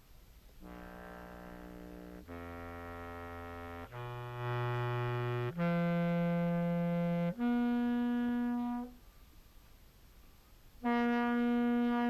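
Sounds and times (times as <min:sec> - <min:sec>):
contrabass clarinet low notes: 0:00.6 - 0:09.0, 0:10.8 - 0:12.0.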